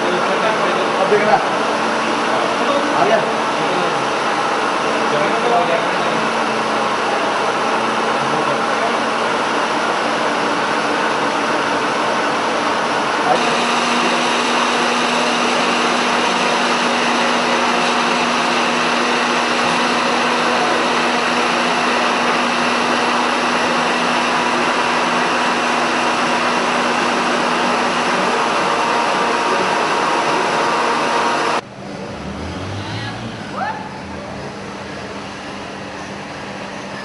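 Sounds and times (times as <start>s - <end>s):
electric kettle boiling: 13.3s - 31.6s.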